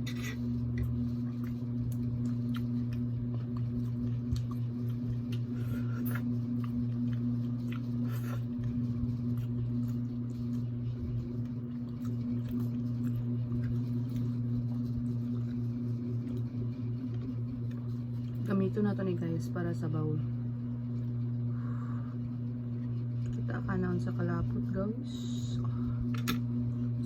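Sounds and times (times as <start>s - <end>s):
steady low hum: 0.0s - 27.0s
chewing seafood: 0.7s - 18.5s.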